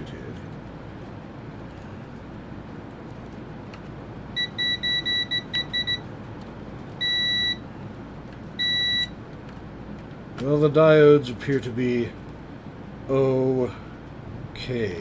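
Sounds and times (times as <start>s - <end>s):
multimeter beeping: 4.4s - 6.0s, 7.0s - 7.6s, 8.6s - 9.2s.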